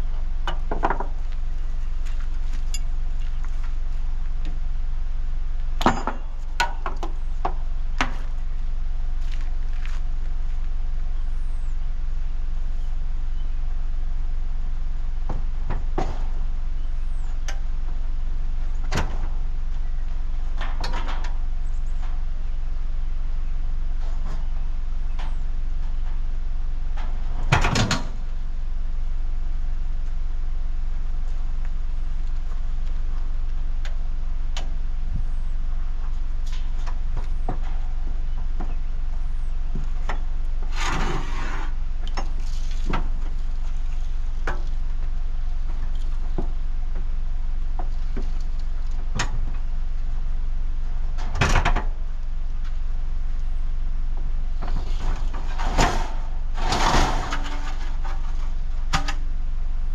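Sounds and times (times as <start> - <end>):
low engine drone: 0.0 - 59.9
clunks and rattles: 0.2 - 1.4, 5.8 - 8.3, 27.0 - 28.2, 54.6 - 59.2.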